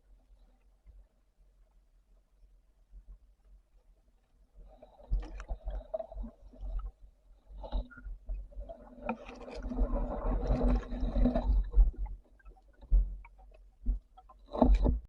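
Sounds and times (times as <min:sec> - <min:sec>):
underwater knocks and clicks: 0:04.8 - 0:15.0
water rushing underwater: 0:07.5 - 0:15.0.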